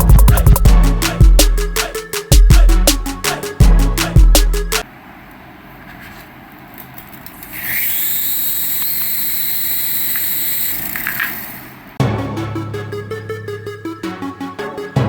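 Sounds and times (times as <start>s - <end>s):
toy electric motor whining: 7.3s - 11.8s.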